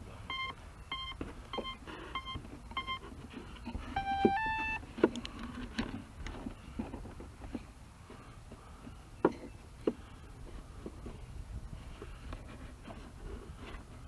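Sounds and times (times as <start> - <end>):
short electronic beeps: 0.3 - 3.0, 3.9 - 4.8
longer electronic tones: 3.8 - 4.8.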